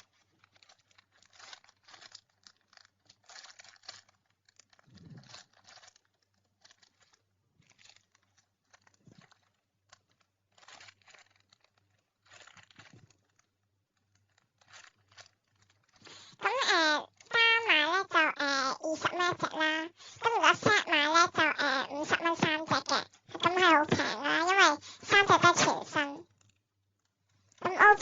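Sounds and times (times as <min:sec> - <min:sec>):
plastic bags crinkling: 0:00.0 - 0:20.1.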